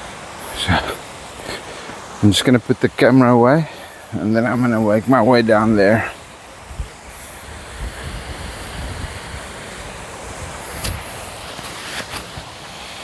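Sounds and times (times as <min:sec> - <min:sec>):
falling water rushing: 0:00.0 - 0:13.0
wind buffeting microphone: 0:04.0 - 0:11.5.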